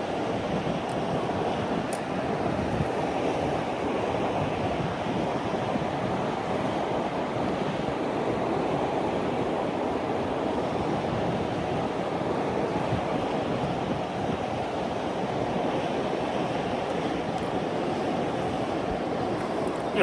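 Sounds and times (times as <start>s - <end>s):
wind: 0.0s - 20.0s
river water rushing: 14.5s - 20.0s.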